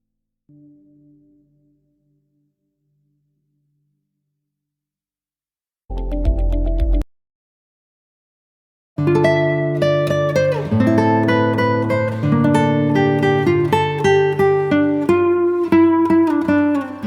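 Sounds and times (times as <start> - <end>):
plucked guitar music: 9.0 - 17.0.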